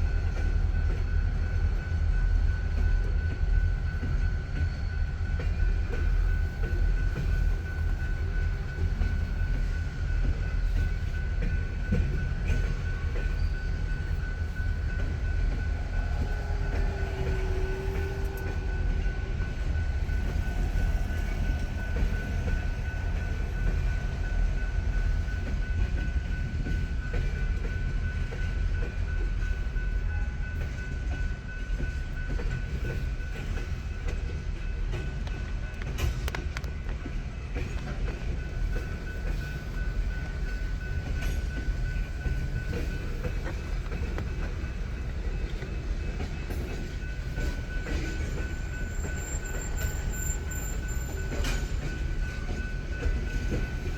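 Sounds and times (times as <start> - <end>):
freight train rumbling on rails: 0.0 - 53.9.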